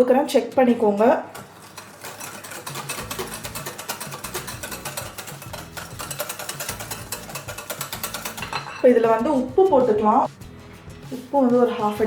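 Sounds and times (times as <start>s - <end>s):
music with quick steady beat: 2.6s - 12.0s.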